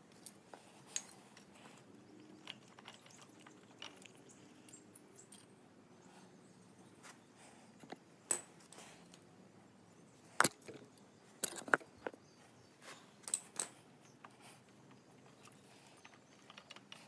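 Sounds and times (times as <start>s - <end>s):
metal tools clinking and knocking: 0.1s - 5.6s, 8.3s - 9.2s, 10.3s - 12.2s, 13.1s - 17.0s.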